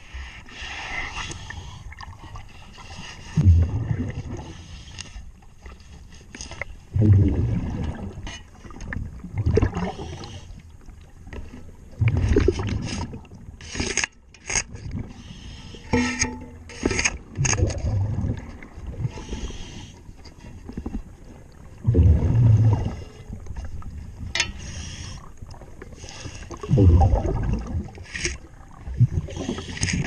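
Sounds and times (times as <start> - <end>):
scuba bubbles rumbling: 3.2 - 4.8, 6.9 - 10.4, 11.0 - 13.6, 16.5 - 19.8, 20.6 - 24.4, 25.3 - 30.0
tool scraping hull underwater: 11.5 - 21.1, 22.0 - 25.2
regulator breathing hiss: 24.6 - 25.2.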